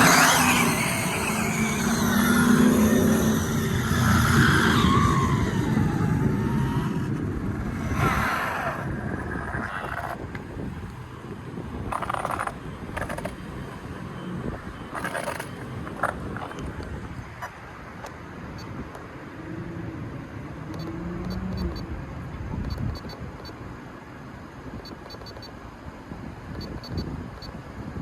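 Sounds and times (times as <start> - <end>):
electric motor whining: 0.0 - 11.0, 11.9 - 16.8
wind buffeting microphone: 0.0 - 17.4.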